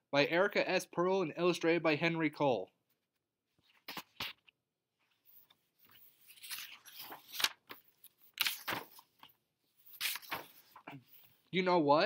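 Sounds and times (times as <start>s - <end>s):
book pages rustling: 3.6s - 11.5s.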